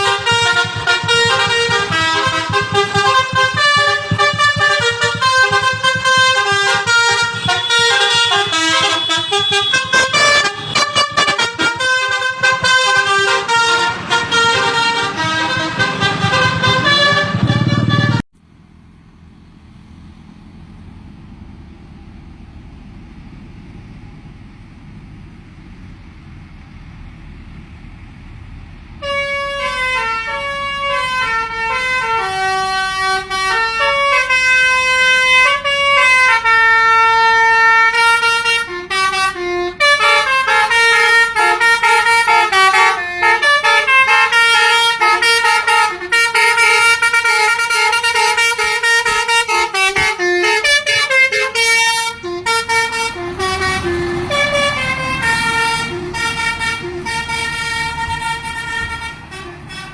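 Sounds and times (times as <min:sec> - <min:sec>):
bus musical horn tune: 0:00.0 - 0:18.3, 0:29.0 - 0:59.9
low vehicle rumble: 0:00.0 - 0:59.9.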